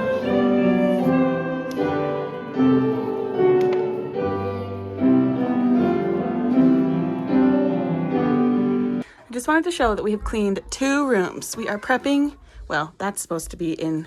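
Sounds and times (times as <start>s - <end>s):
gentle instrumental piano music: 0.0s - 9.0s.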